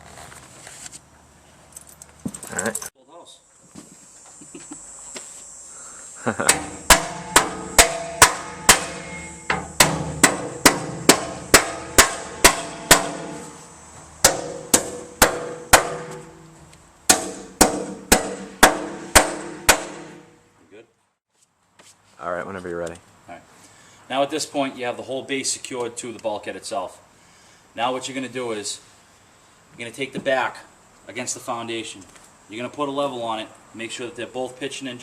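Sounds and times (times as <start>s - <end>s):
hammer striking anchors: 6.5s - 13.6s, 14.2s - 20.4s.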